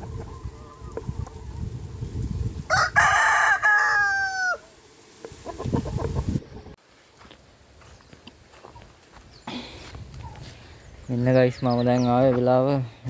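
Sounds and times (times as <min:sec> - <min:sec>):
rooster crowing: 0:02.6 - 0:04.7.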